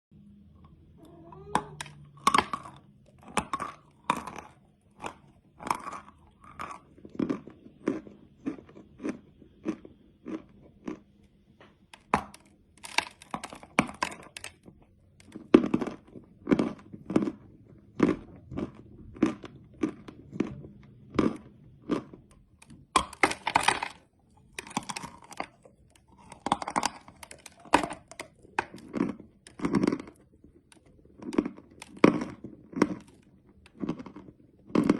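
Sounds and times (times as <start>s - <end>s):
chewing crunchy candy: 0.6s - 34.9s.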